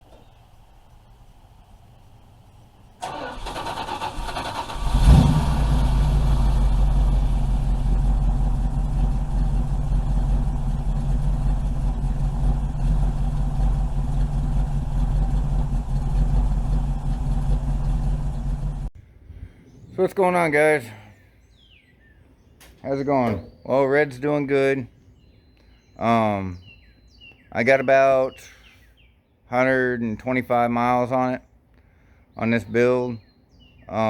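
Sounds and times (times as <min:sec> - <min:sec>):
starter motor cranking: 0:03.0 - 0:06.6
engine revving and idling: 0:03.0 - 0:18.9.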